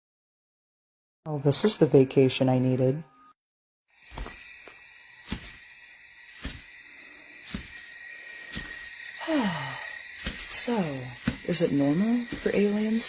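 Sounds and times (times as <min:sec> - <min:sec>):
crickets chirring: 0:03.9 - 0:13.0.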